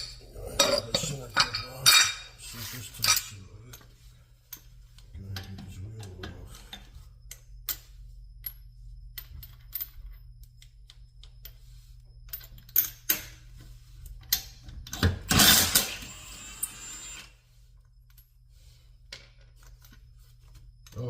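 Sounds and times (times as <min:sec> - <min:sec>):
metal hand tools clinking: 0:00.0 - 0:03.4.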